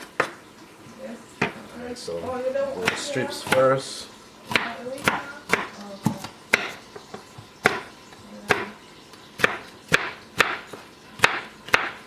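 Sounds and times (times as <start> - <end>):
knife chopping on cutting board: 2.8 - 3.8, 4.5 - 8.8, 9.4 - 12.0.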